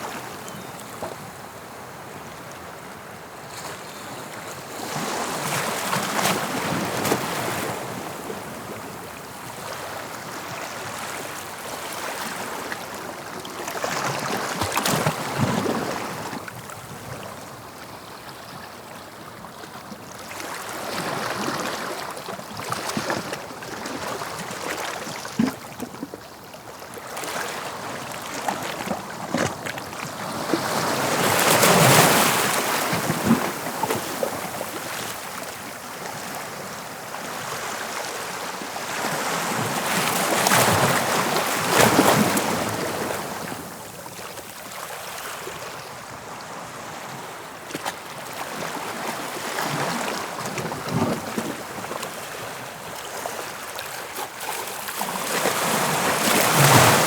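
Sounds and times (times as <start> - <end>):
sea waves breaking on shore: 20.0 - 57.0.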